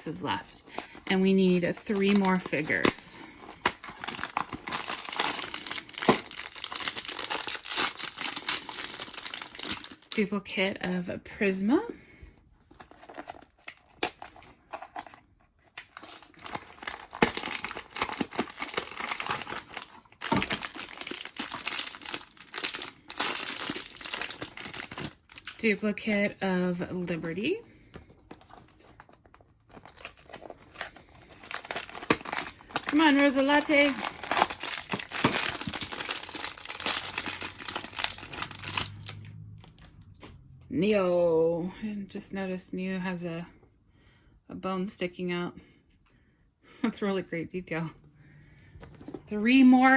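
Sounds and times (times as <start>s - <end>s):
wrapper crinkling and tearing: 0.3s - 10.2s, 12.7s - 25.7s, 28.3s - 40.0s.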